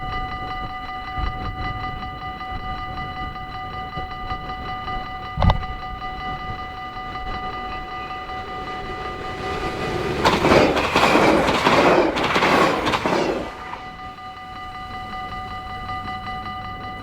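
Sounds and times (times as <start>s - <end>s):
crossing warning bell ringing: 0.0s - 17.0s
train passing: 1.4s - 17.0s
wheel clatter over rail joints: 5.4s - 17.0s.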